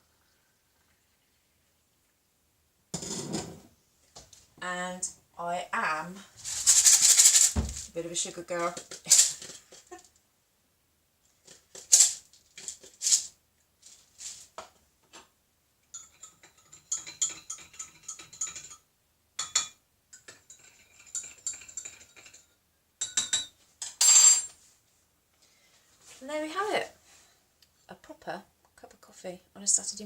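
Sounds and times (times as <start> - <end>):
spoon clattering: 15.9 - 18.8, 19.4 - 24.5.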